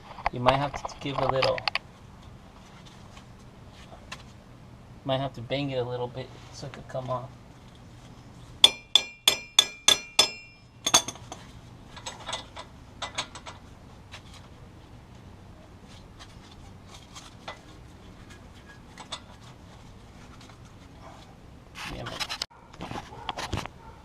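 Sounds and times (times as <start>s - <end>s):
hammer striking metal hub: 8.6s - 11.4s
light knocks and clinks: 9.7s - 13.6s.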